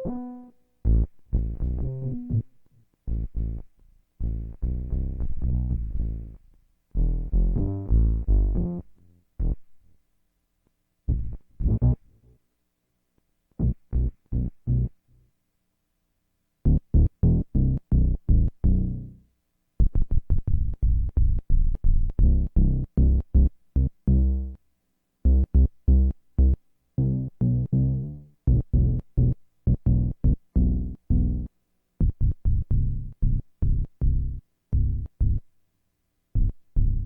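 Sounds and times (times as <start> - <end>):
plucky synthesizer notes: 0.0 - 0.5.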